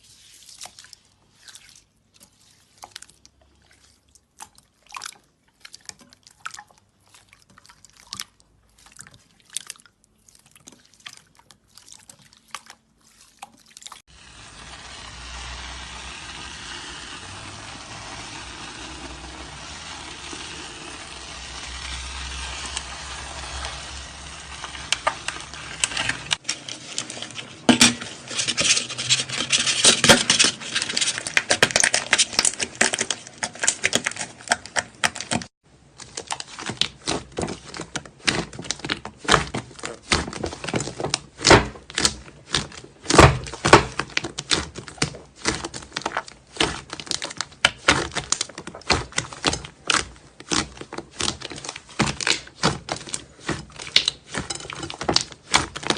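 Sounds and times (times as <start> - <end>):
slime squishing with sticky pops: 31.3 - 55.9.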